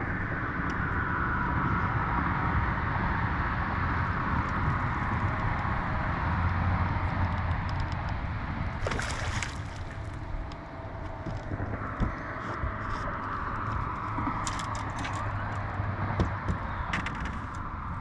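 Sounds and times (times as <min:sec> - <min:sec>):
boat motor hum: 0:00.0 - 0:18.0
wind: 0:00.0 - 0:18.0
water noise: 0:03.9 - 0:16.5.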